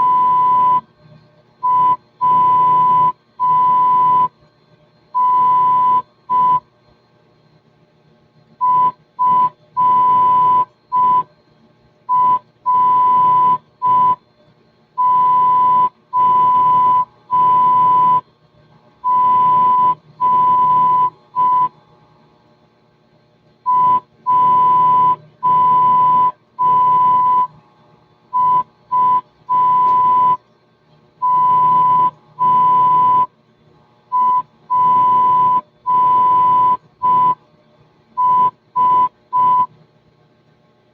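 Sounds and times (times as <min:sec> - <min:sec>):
morse code tone: 0:00.0 - 0:00.8, 0:01.6 - 0:04.3, 0:05.2 - 0:06.6, 0:08.6 - 0:11.2, 0:12.1 - 0:14.2, 0:15.0 - 0:18.2, 0:19.1 - 0:21.7, 0:23.7 - 0:27.6, 0:28.4 - 0:30.4, 0:31.2 - 0:33.3, 0:34.1 - 0:37.4, 0:38.2 - 0:39.7.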